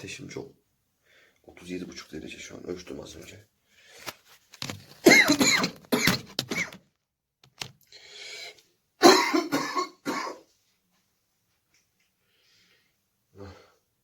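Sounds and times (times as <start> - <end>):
man coughing: 5.1 - 6.7, 9.0 - 10.4.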